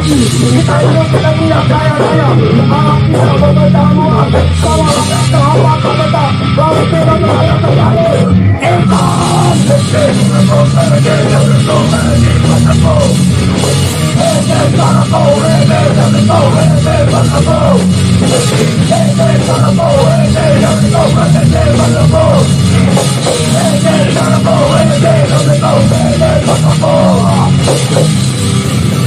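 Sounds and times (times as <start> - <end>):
loud full-band rock: 0.0 - 29.0.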